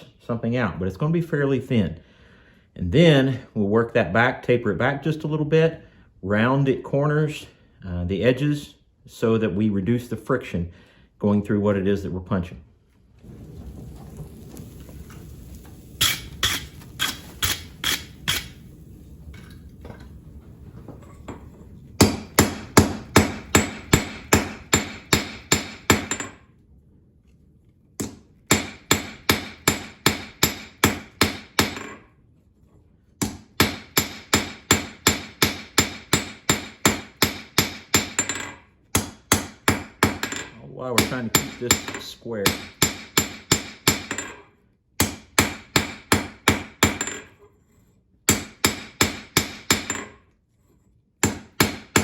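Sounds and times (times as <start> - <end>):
hammer striking hot steel on anvil: 16.0 - 18.6, 22.0 - 26.4, 28.0 - 32.0, 33.2 - 47.4, 48.3 - 50.2, 51.2 - 52.0.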